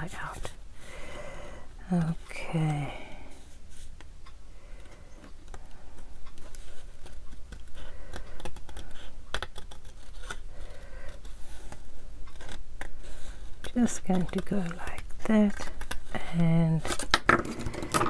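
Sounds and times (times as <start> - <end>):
scissors snipping paper: 5.4 - 17.7.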